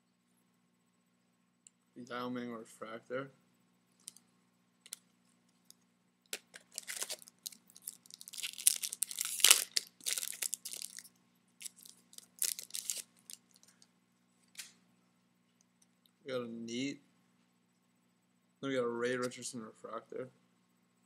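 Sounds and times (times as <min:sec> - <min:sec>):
foil wrapper tearing and crinkling: 0:06.4 - 0:13.8.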